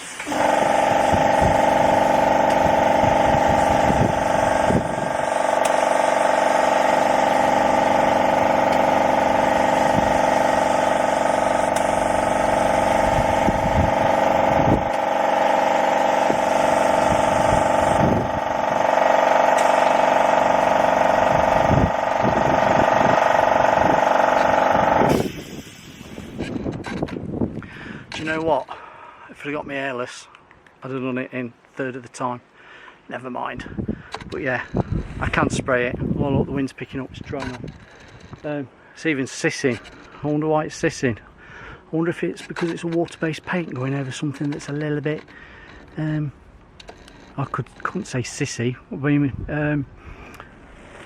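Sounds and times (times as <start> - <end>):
spray gun hissing: 0.0 - 21.9, 23.8 - 26.4
air compressor humming: 0.0 - 29.1, 37.1 - 48.1.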